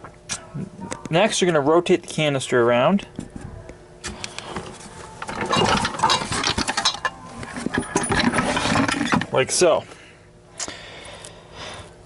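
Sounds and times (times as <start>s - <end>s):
canister rattling: 5.2s - 9.4s.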